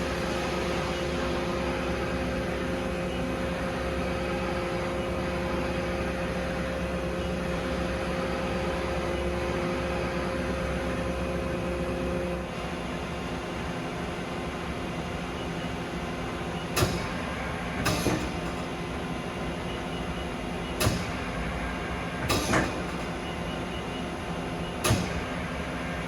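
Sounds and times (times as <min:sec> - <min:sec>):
sharp metallic clunk: 0:16.8 - 0:18.9, 0:20.8 - 0:21.4, 0:22.2 - 0:23.4, 0:24.8 - 0:25.4.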